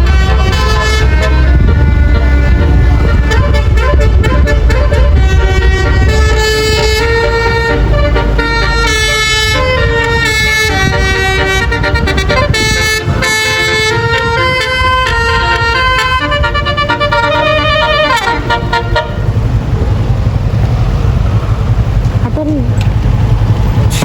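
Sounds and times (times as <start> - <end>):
bus horn playing a tune: 0.0 - 19.8
engine and road rumble: 0.0 - 24.0.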